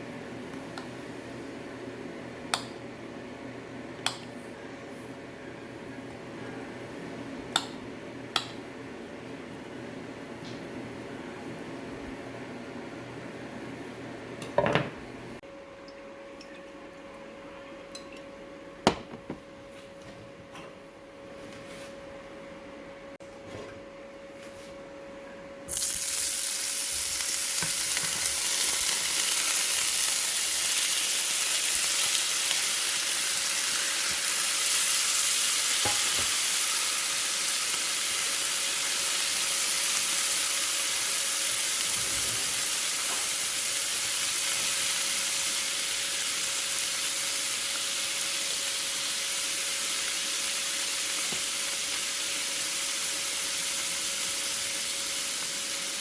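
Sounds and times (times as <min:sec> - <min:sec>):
food sizzling in hot oil: 0:25.7 - 0:56.0.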